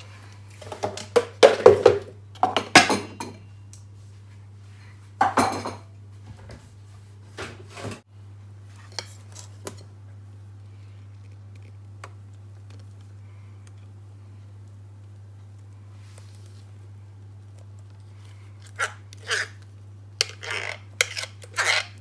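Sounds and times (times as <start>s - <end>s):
steady low hum: 8.1s - 22.0s.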